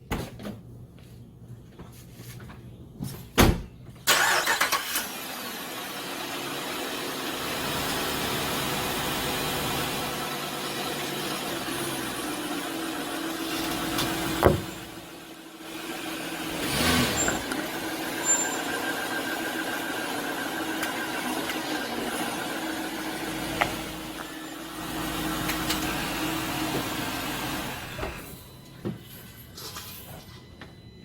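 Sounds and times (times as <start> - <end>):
car engine starting and running: 4.1 - 28.6.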